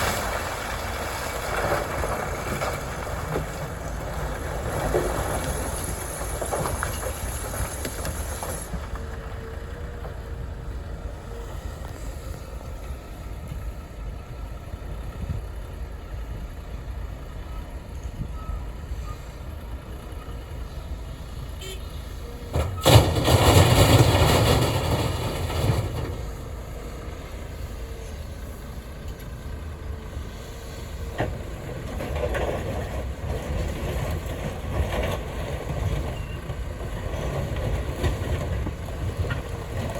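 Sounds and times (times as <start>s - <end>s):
diesel machinery running: 0.0s - 39.9s
rushing crashing noise: 22.6s - 26.3s.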